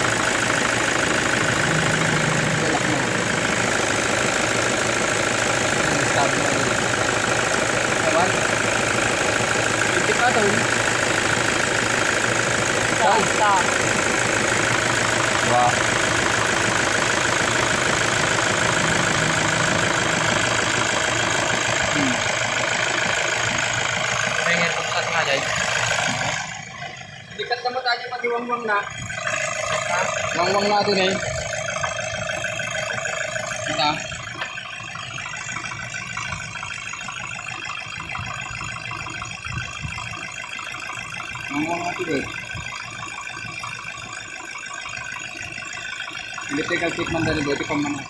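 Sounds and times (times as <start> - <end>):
truck engine idling: 0.0 - 48.0.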